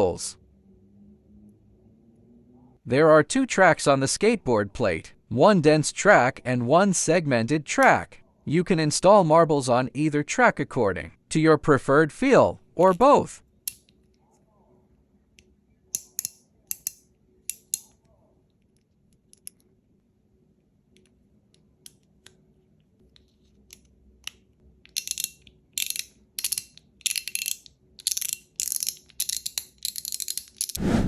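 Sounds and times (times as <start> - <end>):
fidget slider marbles clicking: 24.9 - 30.8.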